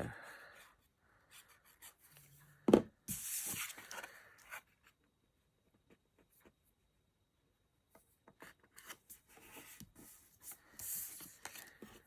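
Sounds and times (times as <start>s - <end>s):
card rustling and sliding: 3.1s - 4.9s.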